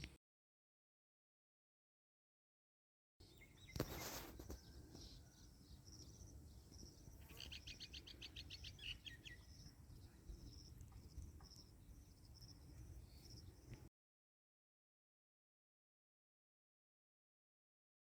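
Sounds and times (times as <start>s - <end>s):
bird singing a trill: 3.2s - 13.8s
rustling: 3.6s - 5.0s.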